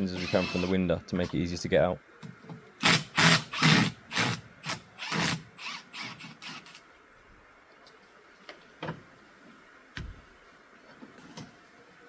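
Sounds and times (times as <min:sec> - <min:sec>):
power tool bursts: 0:00.0 - 0:00.8, 0:02.8 - 0:06.6.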